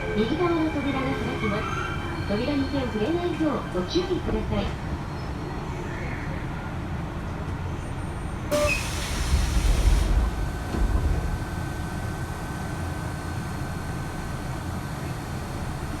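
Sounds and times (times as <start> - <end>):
train car low rumble: 0.0 - 16.0
train door air hiss: 8.5 - 11.9.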